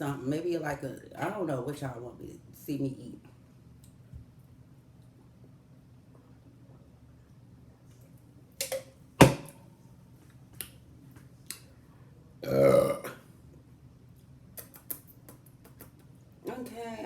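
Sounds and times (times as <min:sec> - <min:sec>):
woman belching: 0:12.4 - 0:13.2.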